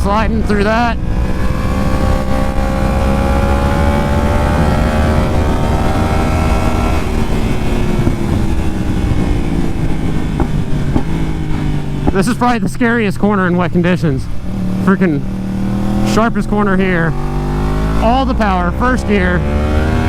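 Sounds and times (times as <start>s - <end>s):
wind rumble on microphone: 0.0s - 13.0s
motorcycle engine accelerating: 0.0s - 20.0s.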